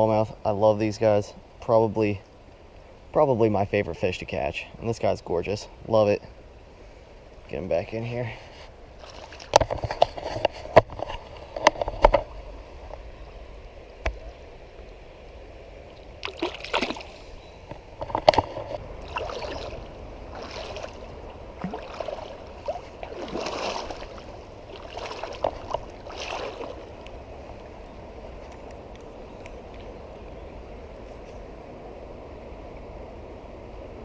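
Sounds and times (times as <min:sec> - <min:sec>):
creek water splashing: 0:08.4 - 0:30.2.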